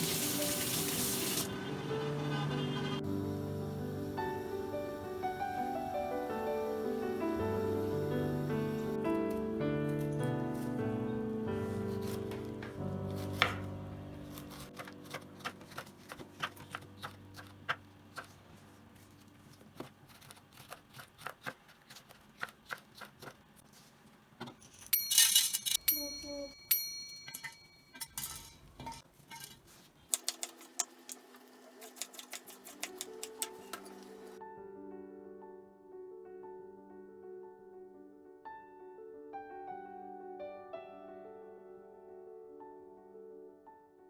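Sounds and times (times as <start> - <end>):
background music: 0.0 - 15.8
kitchen utensils and dishes clinking: 24.6 - 34.4
ringing clinks: 24.7 - 28.7.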